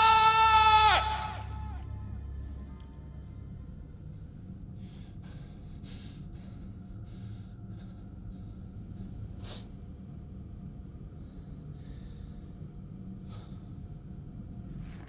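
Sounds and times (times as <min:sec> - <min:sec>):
low steady hum: 0:00.0 - 0:15.0
man breathing heavily: 0:04.3 - 0:09.9, 0:11.0 - 0:14.3.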